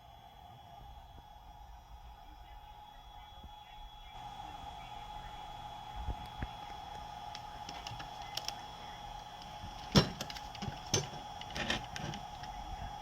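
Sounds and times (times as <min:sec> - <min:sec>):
faint hum: 0:00.0 - 0:13.0
hard objects clicking and knocking: 0:09.8 - 0:12.5.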